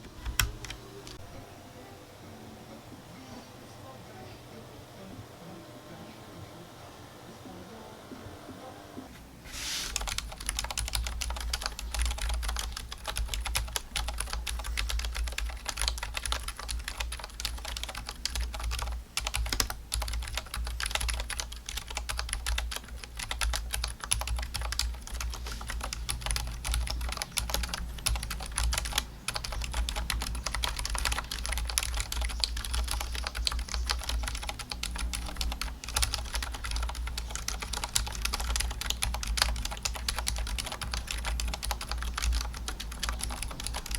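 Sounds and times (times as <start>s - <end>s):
typing on mechanical keyboard: 0.0s - 1.2s, 9.9s - 43.9s.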